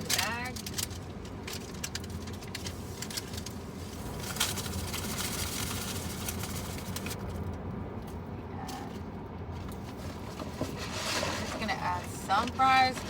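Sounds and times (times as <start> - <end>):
paper packaging crackling: 0.0 - 7.4.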